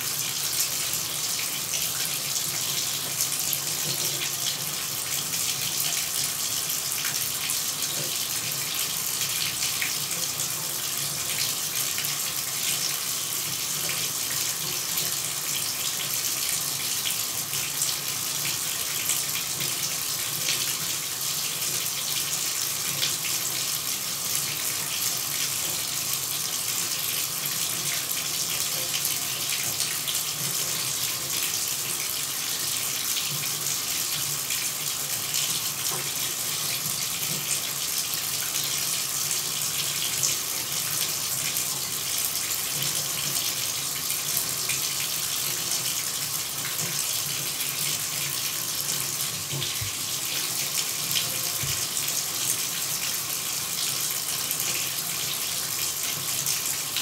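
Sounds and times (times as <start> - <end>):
shower running: 0.0 - 57.0.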